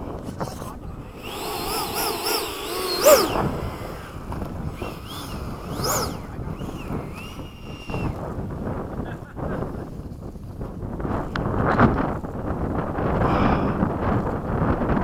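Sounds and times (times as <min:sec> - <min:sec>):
electric ducted fan whine: 0:00.0 - 0:09.8
wind rumble on microphone: 0:00.0 - 0:15.0.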